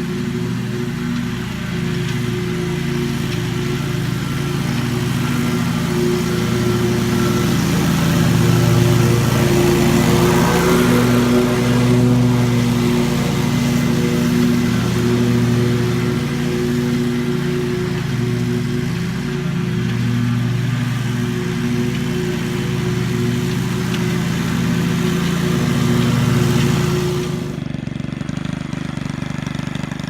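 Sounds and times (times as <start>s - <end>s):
lawn mower engine cutting grass: 0.0s - 30.0s.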